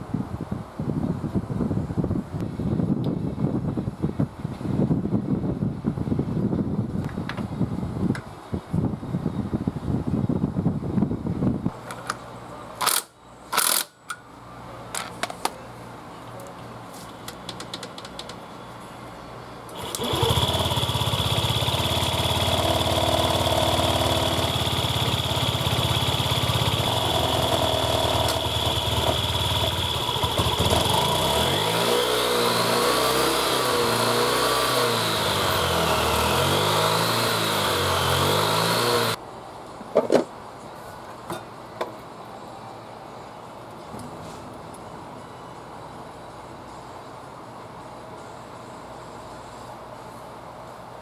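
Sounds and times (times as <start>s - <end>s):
scooter engine idling and revving: 19.7s - 39.2s.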